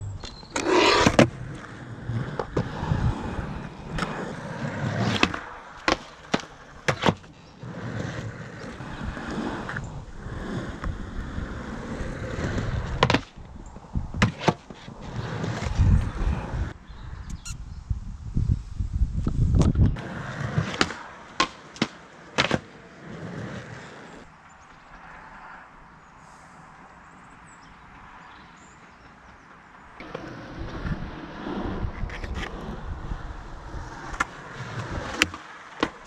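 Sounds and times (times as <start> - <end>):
skate wheels rolling: 0.0 - 16.8, 19.2 - 36.0
skateboard deck clacks and knocks: 5.0 - 7.3, 12.5 - 13.4, 19.6 - 23.7, 34.1 - 36.0.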